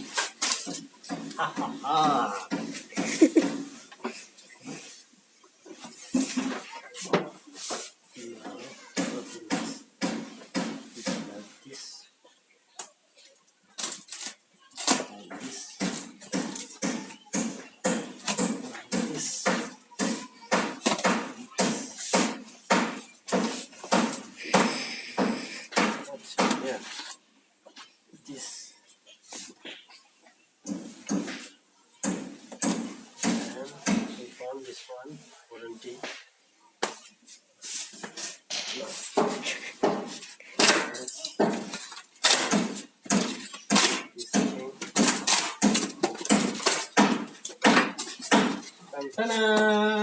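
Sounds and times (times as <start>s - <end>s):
parts knocking: 39.0s - 49.2s.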